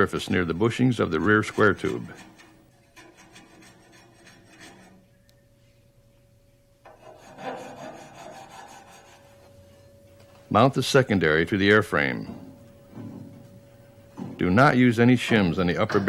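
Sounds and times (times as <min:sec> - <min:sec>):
hand file rasping on metal: 0:00.0 - 0:05.0, 0:06.9 - 0:09.5.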